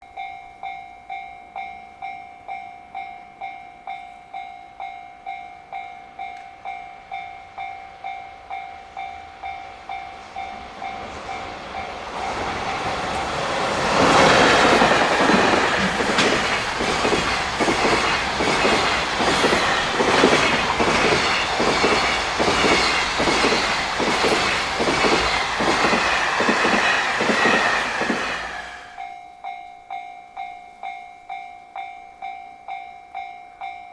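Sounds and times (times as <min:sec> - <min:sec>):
freight train passing: 0:06.1 - 0:29.2
train wheels clattering over rail joints: 0:10.3 - 0:29.0.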